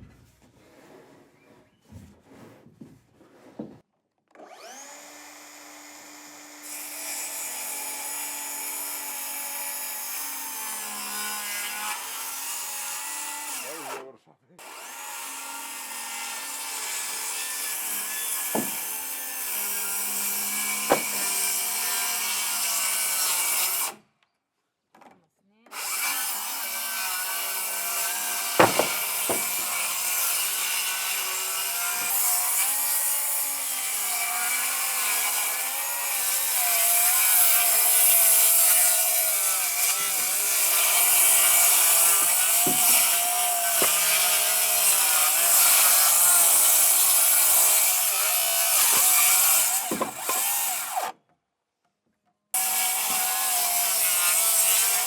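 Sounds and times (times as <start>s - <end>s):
sawing and rubbing on wood: 16.4s - 21.5s, 26.3s - 51.0s
sharp knocks: 18.6s - 18.9s, 20.9s - 21.3s, 28.6s - 29.9s, 41.9s - 44.3s, 49.8s - 50.5s.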